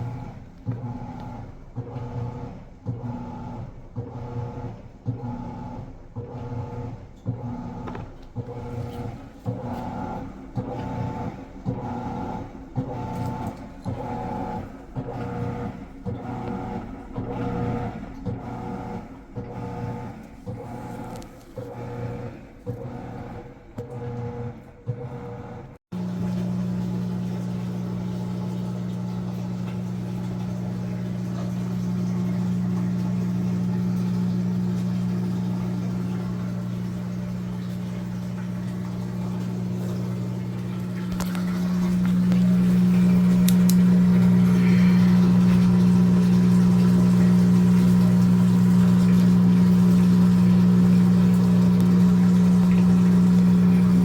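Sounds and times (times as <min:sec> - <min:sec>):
washing machine motor hum: 0:00.0 - 0:54.0.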